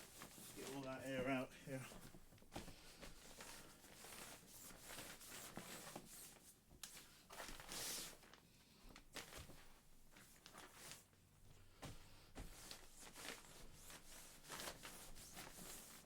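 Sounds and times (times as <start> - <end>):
mat fabric rustling: 0.0 - 16.0.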